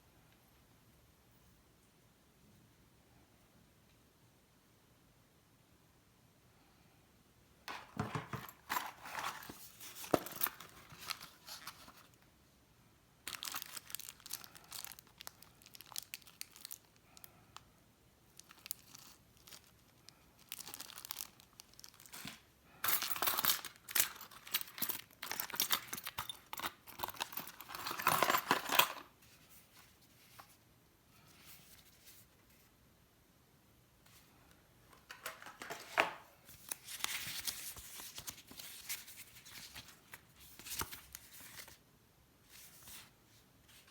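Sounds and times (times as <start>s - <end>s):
packaging tearing and crinkling: 13.3s - 16.9s.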